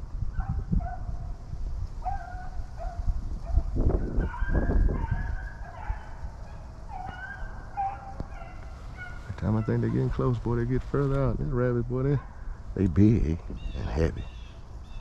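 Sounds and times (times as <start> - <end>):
hounds baying and yelping: 0.3 - 1.4, 2.0 - 10.5, 12.0 - 12.6.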